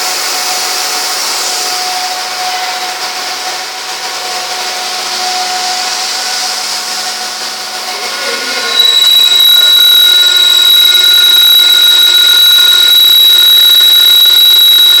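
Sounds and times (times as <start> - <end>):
drilling machine running: 7.6 - 15.0
loud high-pitched tone: 7.6 - 15.0.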